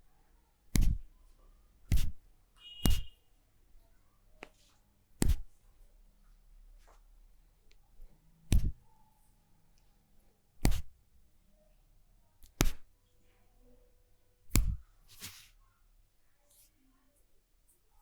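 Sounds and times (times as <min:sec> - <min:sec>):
hands slapping on body: 0:00.7 - 0:01.1, 0:01.9 - 0:02.2, 0:02.8 - 0:03.1, 0:04.4 - 0:05.6, 0:08.5 - 0:08.8, 0:10.6 - 0:11.0, 0:12.4 - 0:12.9, 0:14.5 - 0:15.5
soft brushing swish: 0:00.7 - 0:01.1, 0:01.9 - 0:02.2, 0:02.8 - 0:03.1, 0:04.5 - 0:05.6, 0:08.5 - 0:08.8, 0:10.6 - 0:10.9, 0:14.5 - 0:15.6.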